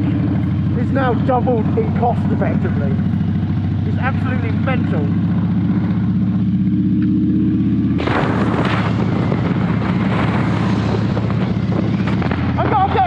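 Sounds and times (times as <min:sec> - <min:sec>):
motorcycle engine running: 0:00.0 - 0:13.0
wind noise on microphone: 0:08.0 - 0:13.0.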